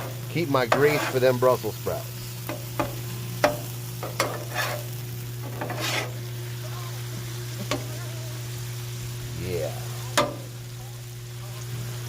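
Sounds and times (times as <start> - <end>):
metal spatula scraping a griddle: 0.0 - 6.4
bacon sizzling on a griddle: 0.0 - 12.0.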